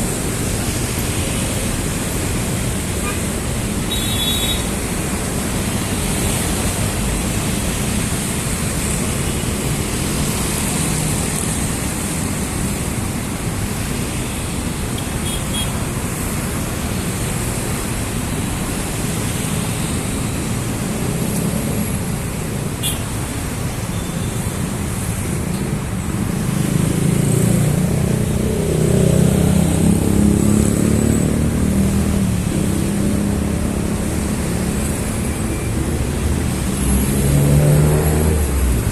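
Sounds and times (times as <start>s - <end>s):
city road traffic: 0.0s - 38.9s.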